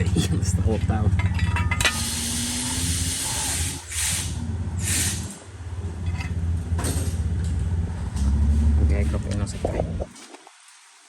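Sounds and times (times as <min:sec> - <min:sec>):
car engine idling with misfire: 0:00.0 - 0:10.1
loud hiss: 0:02.0 - 0:05.4.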